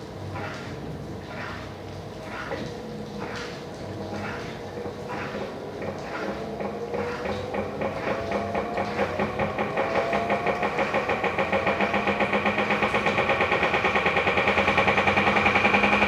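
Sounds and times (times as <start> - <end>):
washing machine knocking: 4.8 - 16.0.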